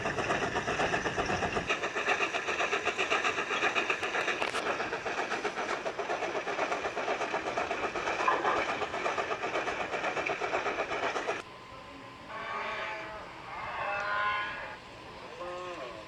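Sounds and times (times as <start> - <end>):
train clattering: 0.0 - 11.5
cow mooing: 12.4 - 14.8.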